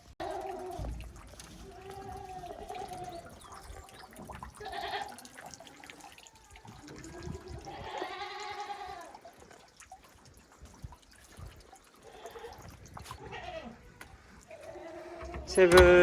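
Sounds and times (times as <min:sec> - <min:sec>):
goats bleating: 0:01.5 - 0:03.4, 0:04.5 - 0:05.4, 0:06.8 - 0:09.2, 0:12.0 - 0:13.9, 0:14.5 - 0:16.0
small knocks and rustles: 0:13.9 - 0:16.0.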